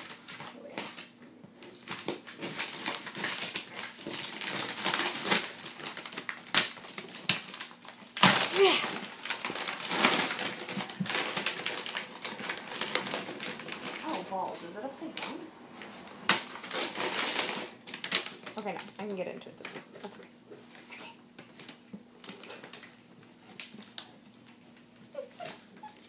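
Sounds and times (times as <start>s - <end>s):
packaging crinkling and rustling: 0.0s - 19.0s, 21.5s - 26.0s.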